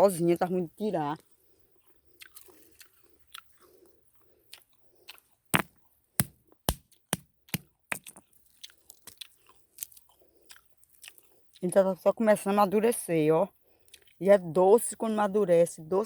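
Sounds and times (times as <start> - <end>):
palm fruits cracking off by hand: 4.6 - 10.0.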